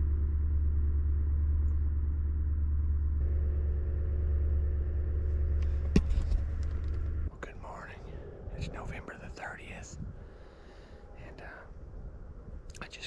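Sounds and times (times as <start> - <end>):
vehicle engine humming: 0.0 - 8.6.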